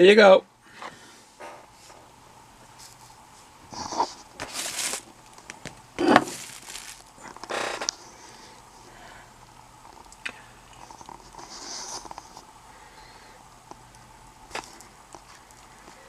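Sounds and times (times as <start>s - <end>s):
rustling and knocking handling noise: 3.7s - 7.4s.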